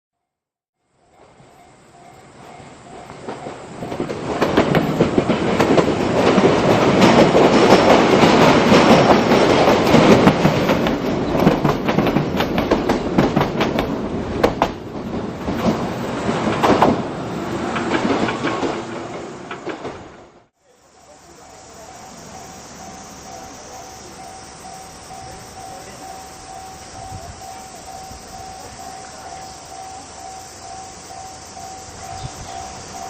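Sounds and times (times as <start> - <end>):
train wheels clattering over rail joints: 2.2 - 20.4.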